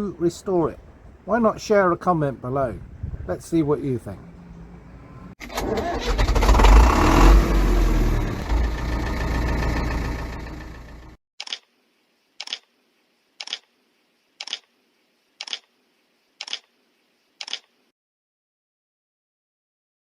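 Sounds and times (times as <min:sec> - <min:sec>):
engine low rumble: 0:02.4 - 0:05.4, 0:06.2 - 0:11.2.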